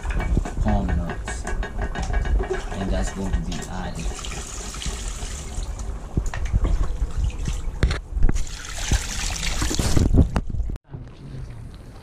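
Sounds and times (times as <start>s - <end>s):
sharp knocks: 0.0s - 5.4s
liquid trickling and splashing: 2.2s - 12.0s.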